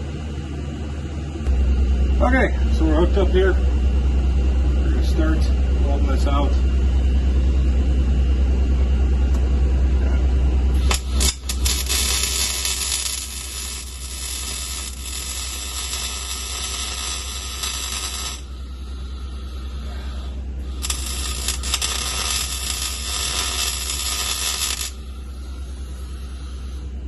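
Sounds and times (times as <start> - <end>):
low hum: 0.0 - 27.0
welding arc crackling and hissing: 10.7 - 26.8
arc striking clicks: 20.8 - 25.0.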